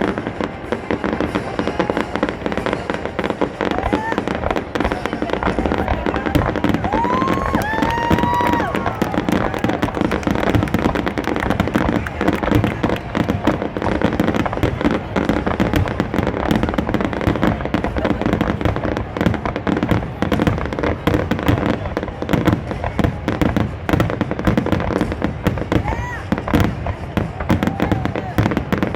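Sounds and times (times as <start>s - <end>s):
fireworks bursts: 0.0s - 28.9s
rising firework whistle: 6.2s - 11.6s.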